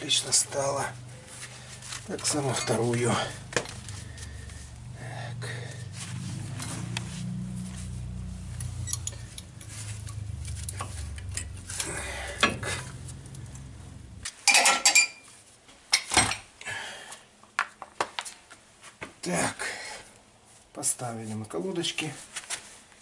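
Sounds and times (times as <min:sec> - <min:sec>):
low steady hum: 0:00.0 - 0:17.1
metal clinks of brake pads: 0:08.6 - 0:11.6.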